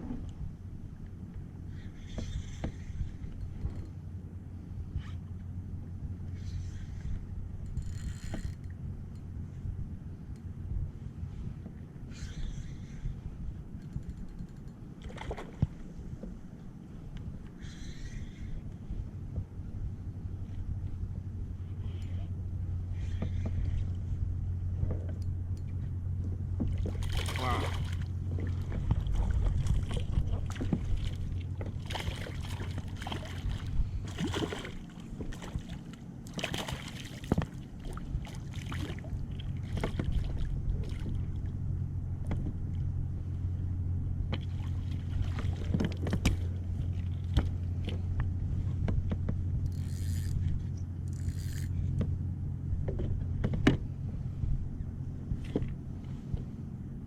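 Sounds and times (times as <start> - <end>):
steady low hum: 0.0 - 57.0
water splashing against hull: 14.9 - 16.4, 26.2 - 42.9, 44.2 - 52.2
light knocks on boat: 42.2 - 42.6, 45.6 - 46.4, 52.8 - 53.9.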